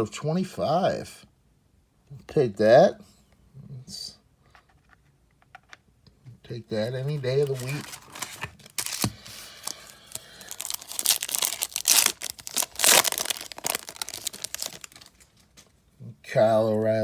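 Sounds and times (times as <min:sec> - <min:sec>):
foil wrapper tearing and crinkling: 0:07.3 - 0:15.3.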